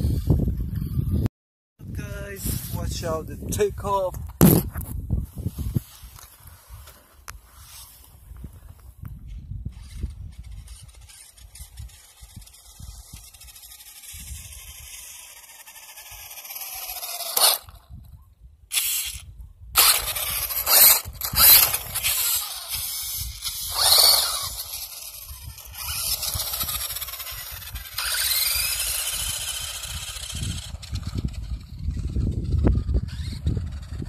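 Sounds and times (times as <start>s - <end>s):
toy car electric motor whining: 0.0s - 1.2s, 9.3s - 18.0s, 18.7s - 34.0s.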